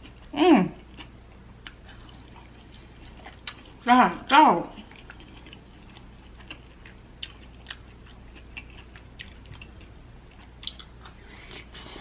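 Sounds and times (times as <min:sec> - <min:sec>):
person chewing food: 0:00.0 - 0:03.8, 0:04.7 - 0:12.0
wet mouth smacks and clicks: 0:10.6 - 0:10.9.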